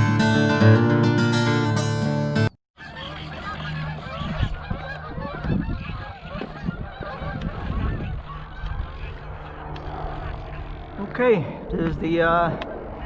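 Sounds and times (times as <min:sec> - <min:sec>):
acoustic guitar music: 0:00.0 - 0:02.5
flock of birds honking: 0:02.8 - 0:11.2
wind buffeting microphone: 0:03.6 - 0:13.0.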